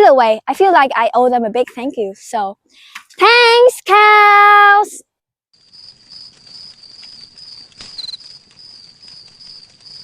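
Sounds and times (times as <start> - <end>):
insects trilling: 5.6 - 10.0.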